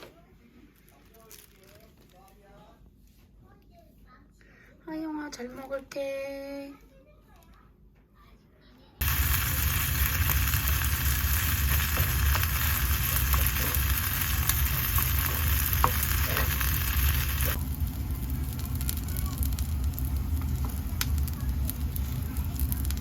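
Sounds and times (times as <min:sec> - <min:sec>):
food sizzling in frying pan: 0:09.0 - 0:23.0
steady low hum: 0:09.0 - 0:23.0.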